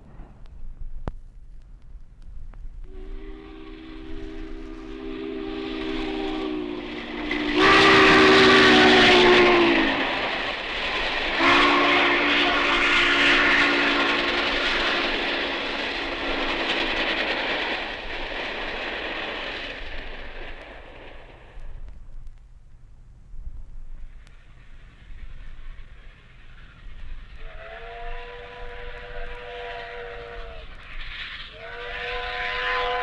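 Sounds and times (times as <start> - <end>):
train rumble and clatter: 0.0 - 33.0
steam locomotive chime whistle: 2.9 - 19.5, 26.6 - 33.0.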